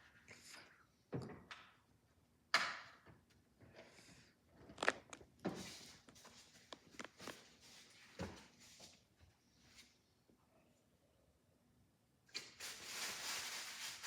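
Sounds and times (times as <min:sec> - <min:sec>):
packaging rustling and scraping: 0:12.6 - 0:14.0.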